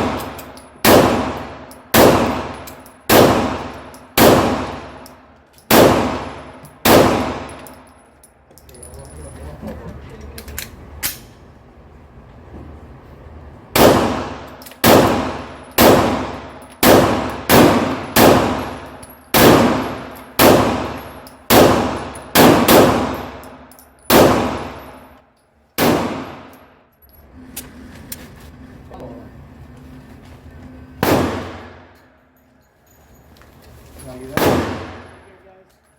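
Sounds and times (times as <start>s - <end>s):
pistol shots ringing: 0.0s - 5.1s, 5.7s - 7.7s, 13.8s - 25.1s, 25.8s - 26.6s, 31.0s - 32.0s, 34.3s - 35.2s.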